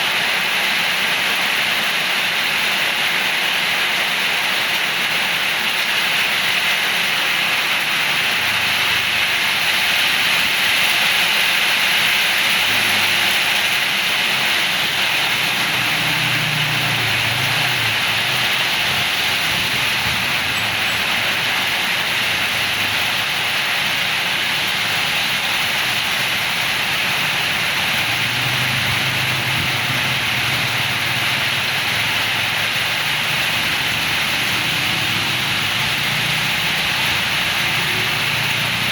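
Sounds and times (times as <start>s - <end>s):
heavy rain in strong wind: 0.0s - 38.9s.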